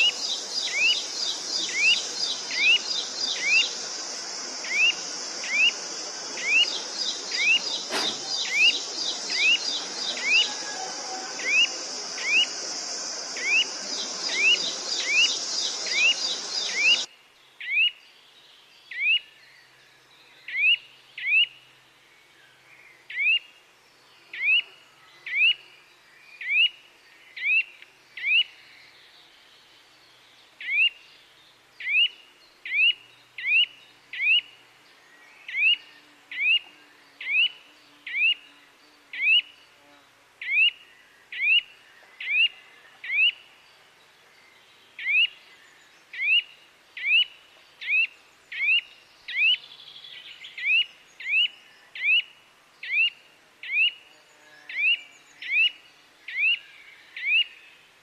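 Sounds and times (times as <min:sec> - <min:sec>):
bird chirping: 0:00.0 - 0:18.0, 0:40.4 - 0:57.8.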